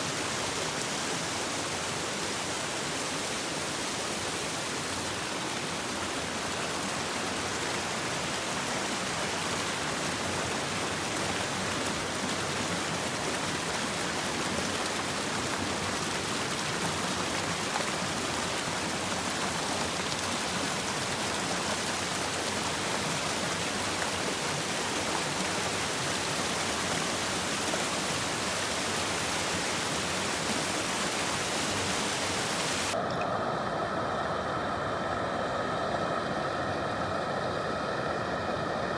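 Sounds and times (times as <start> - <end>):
creek water rushing: 0.0 - 38.9
quieter steady noise: 23.7 - 38.9.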